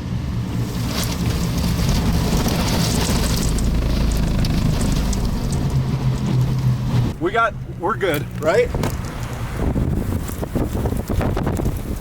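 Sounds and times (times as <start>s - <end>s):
rain: 0.0s - 7.2s
deep rumble: 0.0s - 12.0s
strong wind roaring: 0.0s - 12.0s.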